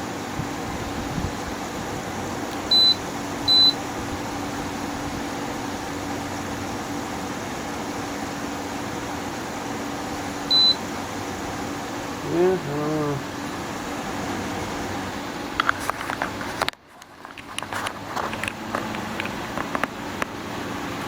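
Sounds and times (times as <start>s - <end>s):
air conditioner fan rushing: 0.0s - 21.0s
short high beeps: 2.7s - 3.8s, 10.5s - 10.8s.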